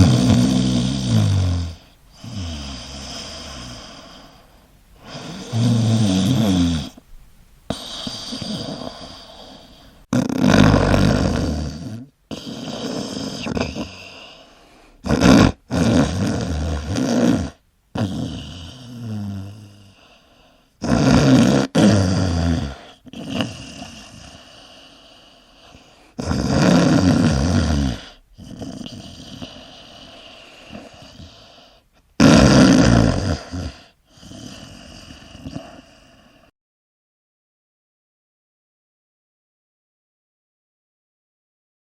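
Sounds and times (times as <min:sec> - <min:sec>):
person snoring loudly: 0:00.0 - 0:07.0, 0:07.7 - 0:20.0, 0:20.8 - 0:24.5, 0:26.2 - 0:31.5, 0:32.2 - 0:36.5
quiet breathing: 0:00.0 - 0:10.1, 0:10.8 - 0:15.1, 0:18.2 - 0:20.8, 0:22.6 - 0:26.2, 0:27.8 - 0:32.2, 0:33.4 - 0:36.5.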